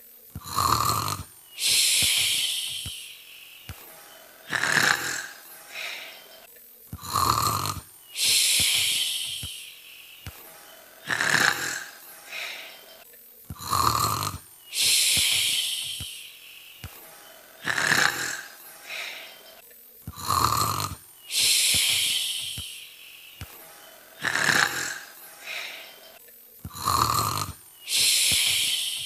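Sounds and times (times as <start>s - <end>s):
imitated snoring: 0.3s - 29.0s.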